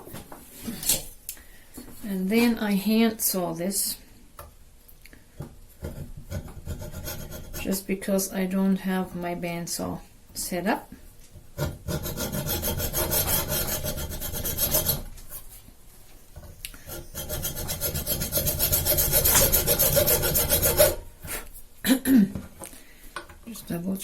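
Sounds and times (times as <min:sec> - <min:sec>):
hand saw cutting acrylic: 0:05.8 - 0:07.8, 0:11.6 - 0:15.1, 0:16.8 - 0:21.1.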